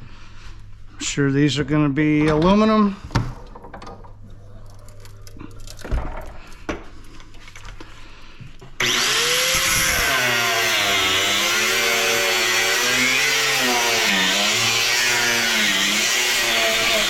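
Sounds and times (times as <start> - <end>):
power tool working metal: 8.8 - 17.0.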